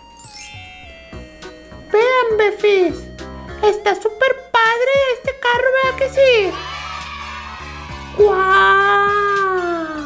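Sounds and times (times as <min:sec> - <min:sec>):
background music: 0:00.0 - 0:10.0
person howling: 0:08.1 - 0:10.0.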